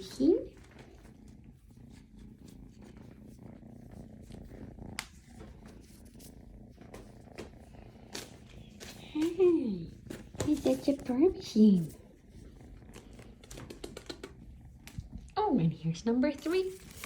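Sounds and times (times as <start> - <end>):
cat purring: 0.0 - 17.0
faint clicks: 13.0 - 15.1.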